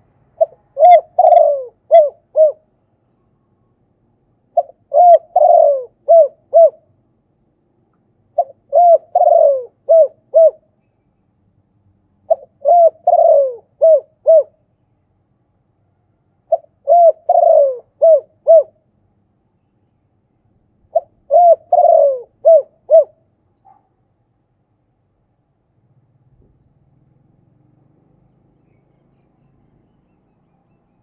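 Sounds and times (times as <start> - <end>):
dove cooing: 0.4 - 2.7, 4.5 - 6.9, 8.3 - 10.7, 12.3 - 14.6, 16.5 - 18.8, 20.9 - 23.3.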